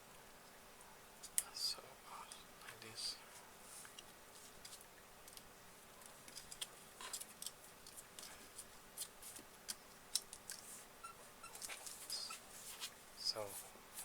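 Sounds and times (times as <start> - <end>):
small clicks and scrapes of handling: 3.8 - 13.0.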